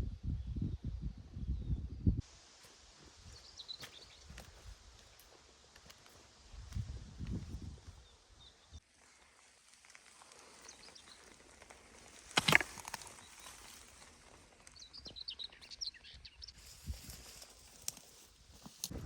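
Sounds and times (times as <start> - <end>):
small birds chirping: 3.1 - 8.8, 10.2 - 18.2.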